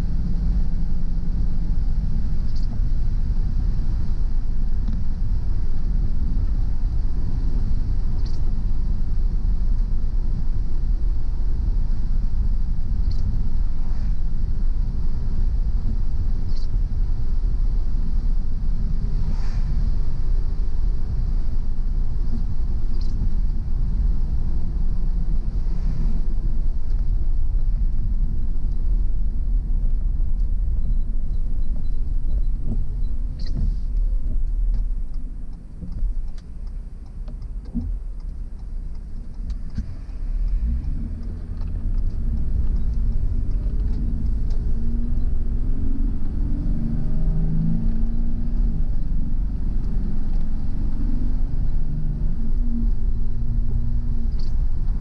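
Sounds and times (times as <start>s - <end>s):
car road and engine rumble: 0.0s - 55.0s.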